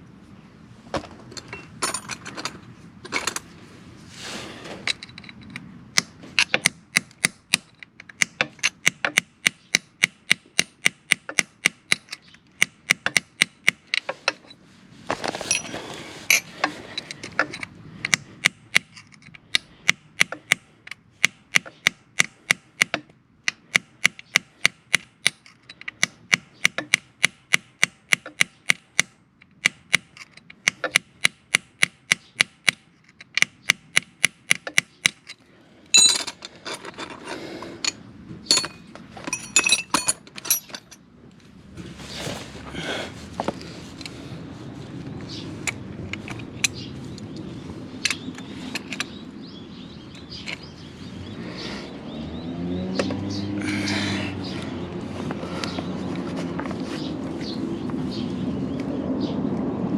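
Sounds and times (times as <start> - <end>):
metal scraping: 1.1 - 5.6, 14.0 - 17.7
sharp metallic clicks: 4.9 - 14.4, 17.0 - 35.4, 48.0 - 49.2.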